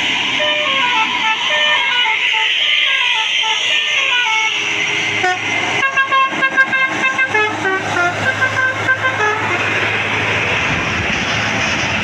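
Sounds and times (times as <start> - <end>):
multi-note bus horn tune: 0.4 - 9.7.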